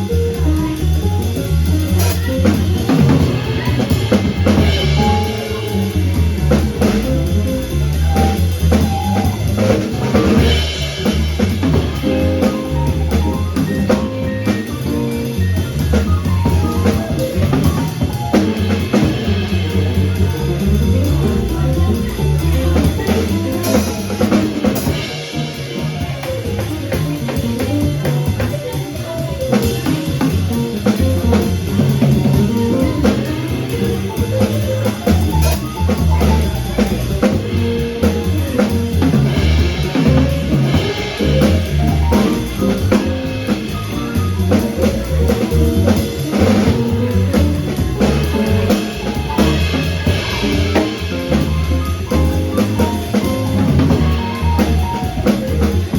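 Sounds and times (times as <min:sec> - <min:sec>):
jazz quartet playing: 0:00.0 - 0:55.9.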